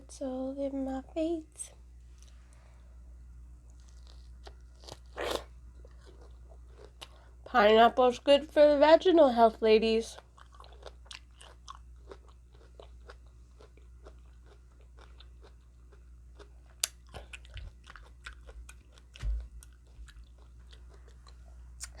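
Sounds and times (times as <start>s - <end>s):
person chewing crunchy food: 3.7s - 7.4s, 10.2s - 22.0s.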